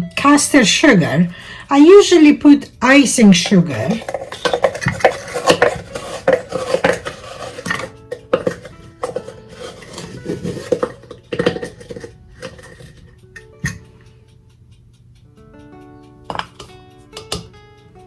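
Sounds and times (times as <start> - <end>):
faint background music: 0.0 - 18.0
utensil clinking and scraping a bowl: 1.0 - 14.0, 16.3 - 17.5.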